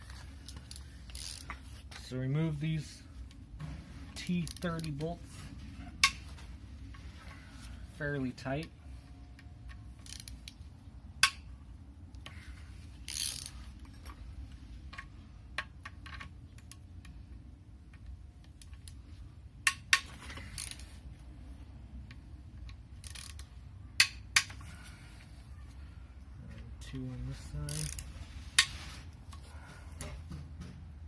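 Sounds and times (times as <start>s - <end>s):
hand ratchet clicking: 0.4s - 1.6s, 9.7s - 10.6s, 13.0s - 13.6s, 19.6s - 20.9s, 22.1s - 24.6s, 27.7s - 28.8s.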